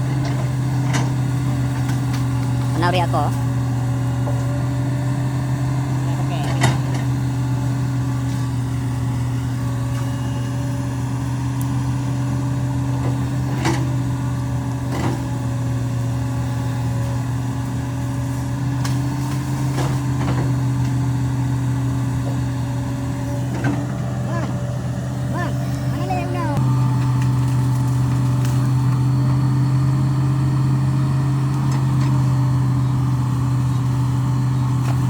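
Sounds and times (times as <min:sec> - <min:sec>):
excavator diesel engine running: 0:00.0 - 0:35.0.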